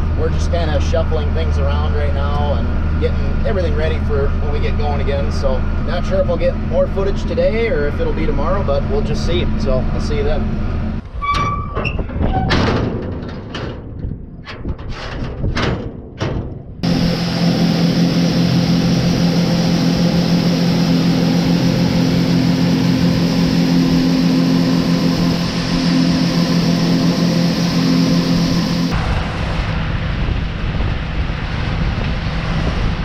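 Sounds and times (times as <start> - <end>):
farm machine engine running: 0.0 - 11.0, 16.8 - 32.9
irregular noisy bursts: 16.8 - 31.8.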